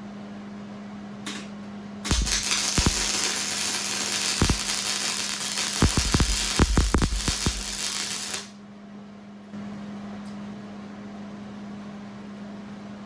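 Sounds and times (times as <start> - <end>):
low electrical hum: 0.0 - 10.4
loud crackling hiss: 2.1 - 8.5.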